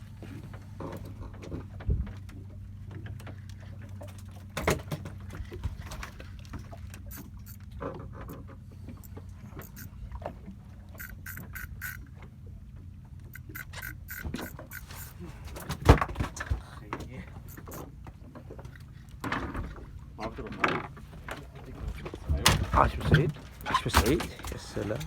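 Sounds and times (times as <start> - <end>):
boat engine humming: 0.0 - 25.0
gear clicking and knocking: 13.2 - 15.2.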